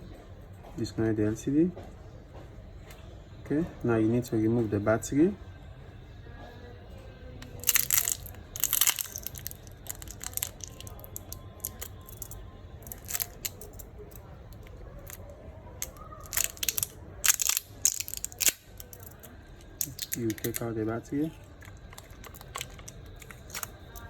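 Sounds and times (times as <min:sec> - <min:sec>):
plastic tool prying battery: 0:07.4 - 0:15.2, 0:15.8 - 0:20.7, 0:21.5 - 0:24.0.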